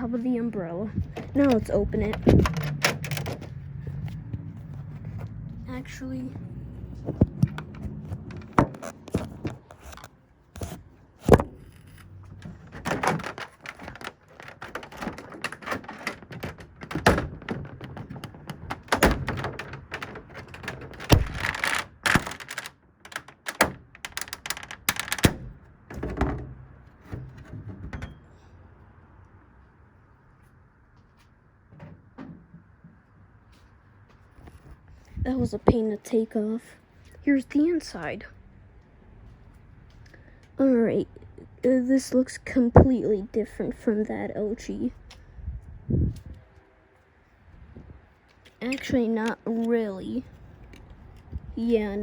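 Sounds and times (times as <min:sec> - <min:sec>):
scraping handling noise: 0:00.9 - 0:28.5.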